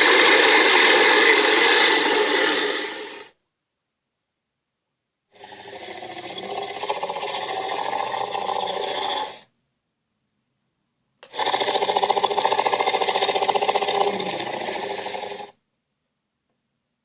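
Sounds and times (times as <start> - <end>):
dinosaur growl with pulsing rattle: 5.4 - 9.4, 11.2 - 15.5.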